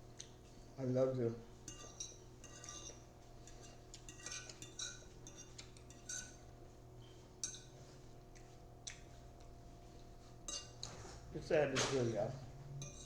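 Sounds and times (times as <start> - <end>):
steady low hum: 0.0 - 13.0
cutlery clinking on a dish: 1.6 - 6.5, 7.4 - 7.8, 10.5 - 11.2, 12.8 - 13.0.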